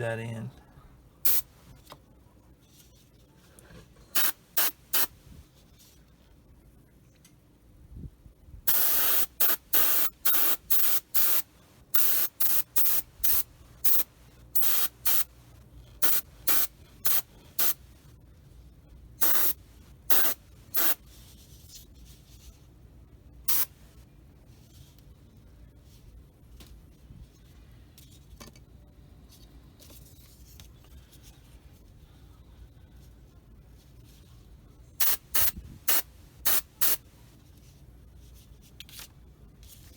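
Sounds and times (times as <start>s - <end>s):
airbrush spraying bursts: 1.3s - 1.5s, 4.2s - 5.1s, 8.7s - 15.3s, 16.0s - 17.8s, 19.2s - 21.0s, 23.5s - 23.8s, 35.0s - 37.0s.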